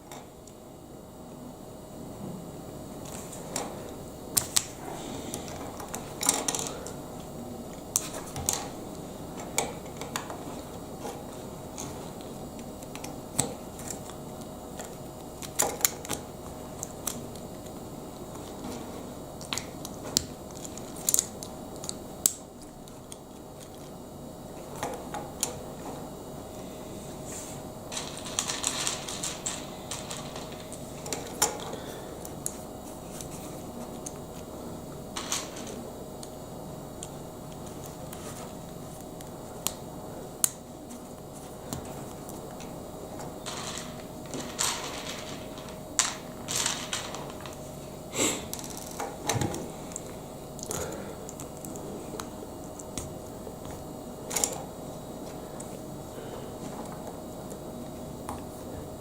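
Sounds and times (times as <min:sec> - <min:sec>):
plastic pieces rattling: 0:27.9 - 0:31.6, 0:43.4 - 0:47.6.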